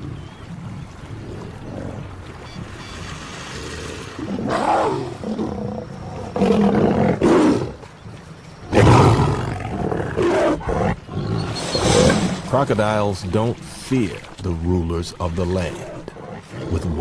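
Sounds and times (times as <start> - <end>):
lions roaring and snarling: 3.5 - 7.8, 8.7 - 12.6, 15.5 - 17.0.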